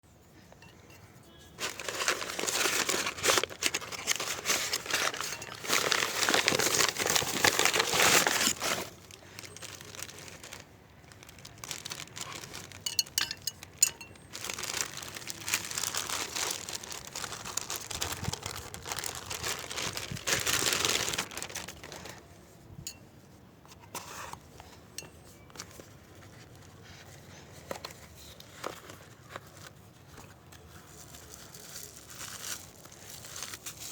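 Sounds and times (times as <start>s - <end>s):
packaging crumpling and tearing: 1.6s - 22.3s, 27.8s - 33.9s.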